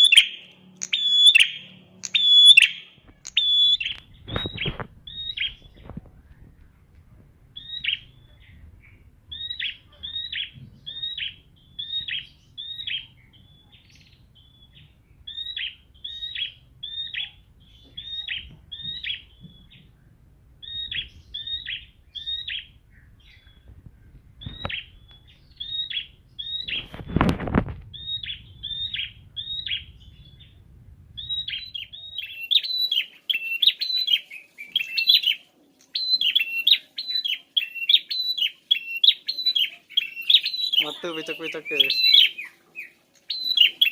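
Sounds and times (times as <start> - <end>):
bird chirping: 0.0 - 6.5, 7.5 - 43.9
faint low rumble: 2.9 - 32.8.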